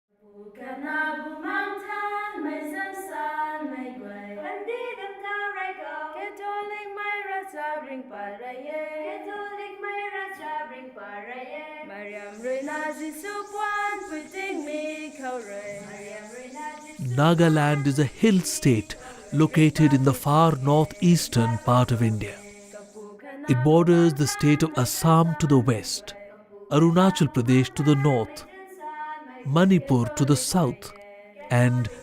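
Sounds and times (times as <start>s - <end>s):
voices singing unaccompanied: 11.8s - 32.0s
steady hiss: 12.1s - 26.1s, 31.5s - 32.0s.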